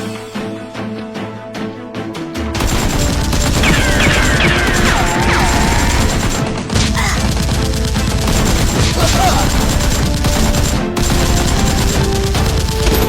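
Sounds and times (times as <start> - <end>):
action music: 0.0 - 13.0
rapid continuous gunfire: 2.6 - 13.0.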